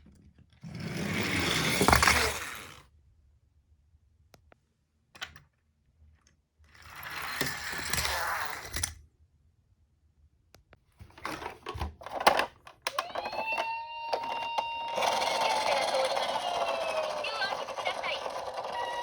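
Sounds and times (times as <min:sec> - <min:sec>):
toy cars rattling down slope: 0:00.7 - 0:02.8, 0:06.8 - 0:09.0, 0:12.2 - 0:19.0
toy cars clicking together: 0:06.9 - 0:09.0, 0:12.1 - 0:19.0.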